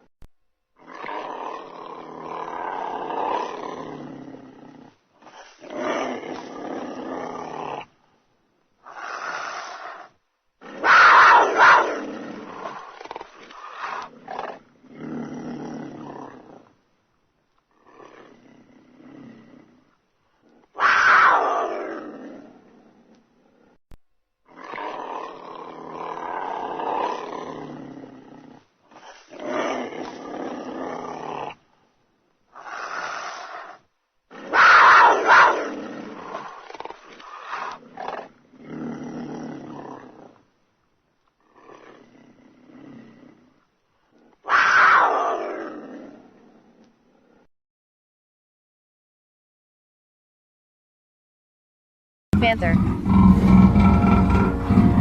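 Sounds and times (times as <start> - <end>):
wild cat calling: 8.8 - 15.1, 20.6 - 22.2, 34.4 - 38.4, 44.2 - 46.4, 52.4 - 55.0.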